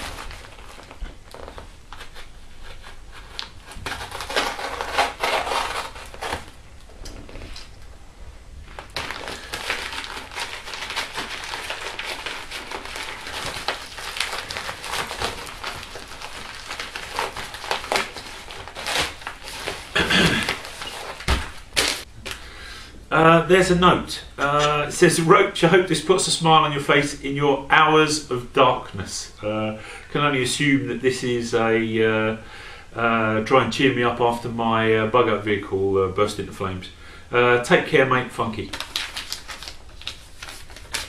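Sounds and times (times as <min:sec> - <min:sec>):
packaging crinkling and rustling: 0:00.0 - 0:07.9, 0:08.6 - 0:22.4, 0:38.4 - 0:41.0.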